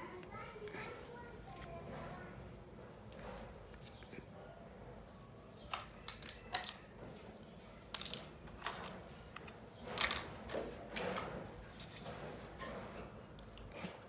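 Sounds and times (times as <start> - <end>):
plastic toy pieces clicking: 5.7 - 6.8, 7.4 - 11.2.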